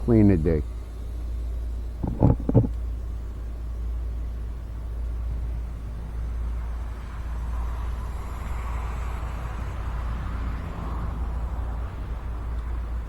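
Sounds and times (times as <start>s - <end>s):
distant motor whir: 0.0s - 13.0s
wind buffeting microphone: 2.0s - 2.7s.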